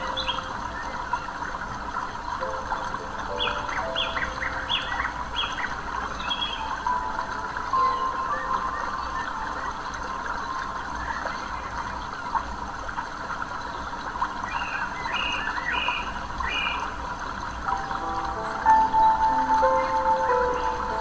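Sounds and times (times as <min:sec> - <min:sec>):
stream water babbling: 0:00.0 - 0:21.0
bird calling: 0:02.4 - 0:10.4, 0:17.7 - 0:21.0.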